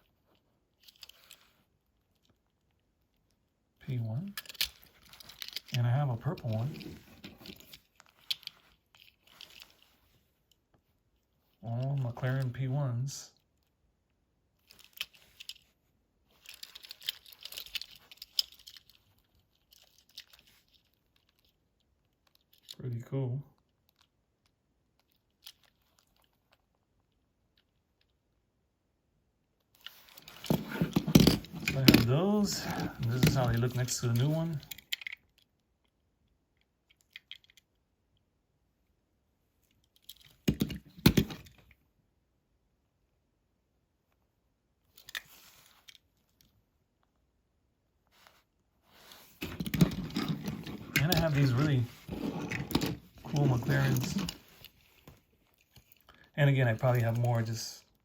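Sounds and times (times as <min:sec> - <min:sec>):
toy cars clicking: 0:16.4 - 0:21.6, 0:49.4 - 0:54.4
toy cars clacking down: 0:49.4 - 0:54.4.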